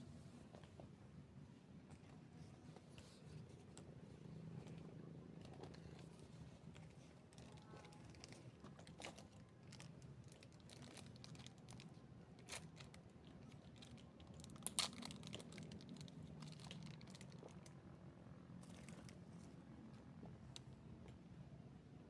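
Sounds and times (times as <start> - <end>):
faint crackles and clicks: 4.6 - 17.9.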